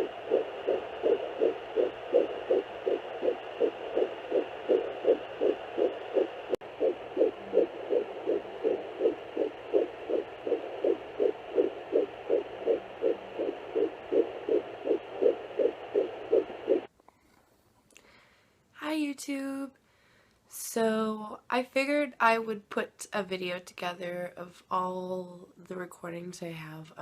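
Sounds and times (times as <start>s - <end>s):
fast fetal heartbeat pulse: 0.0s - 16.9s
steady doppler hiss: 0.0s - 16.9s.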